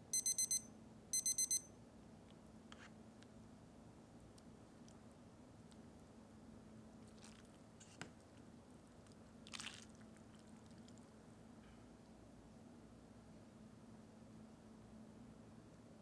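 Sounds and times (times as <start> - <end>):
short wet squish: 9.5 - 11.0.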